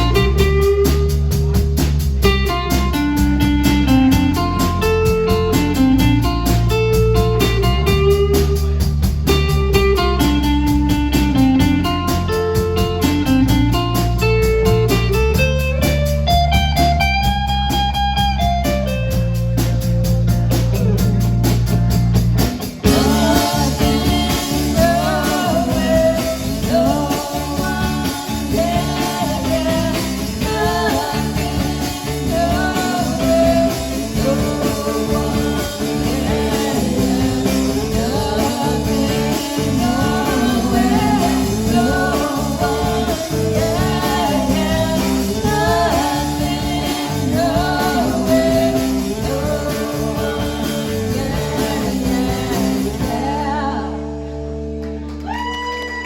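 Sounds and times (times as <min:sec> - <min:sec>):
rock band playing: 0:00.0 - 0:56.0
person singing: 0:22.8 - 0:54.2.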